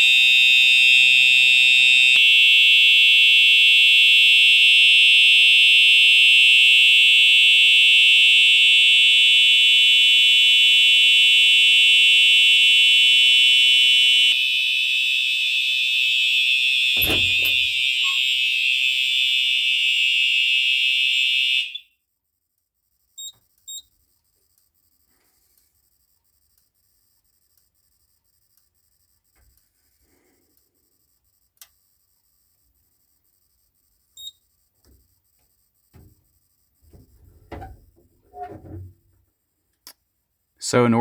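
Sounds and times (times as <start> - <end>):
fire alarm high-pitched tone: 0.0 - 22.0
thump: 17.0 - 17.8.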